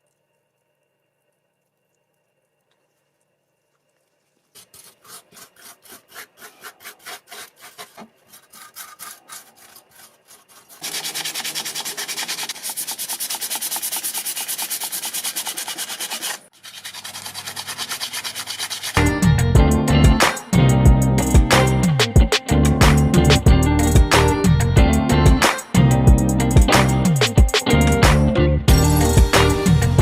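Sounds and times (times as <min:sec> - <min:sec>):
hand sanding strokes: 0:04.4 - 0:19.2.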